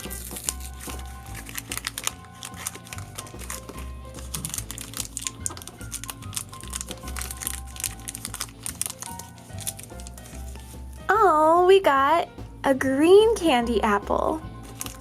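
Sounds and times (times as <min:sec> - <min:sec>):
plastic packaging crinkling: 0:00.0 - 0:11.0, 0:14.6 - 0:15.0.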